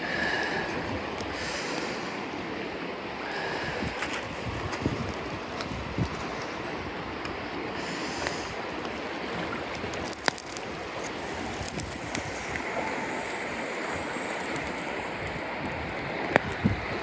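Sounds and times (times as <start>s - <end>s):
mountain stream rushing: 0.0s - 17.0s
campfire popping: 7.2s - 17.0s.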